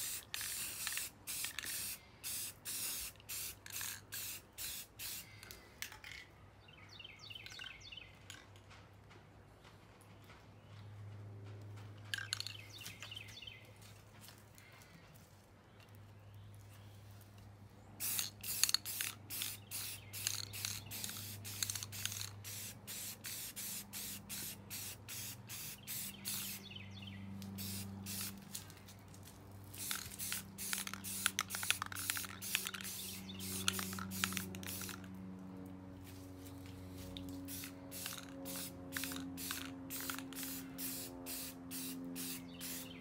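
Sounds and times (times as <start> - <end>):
spray paint hissing bursts: 0.0 - 5.3, 18.0 - 26.8, 27.4 - 28.7, 29.7 - 35.1, 37.0 - 43.0.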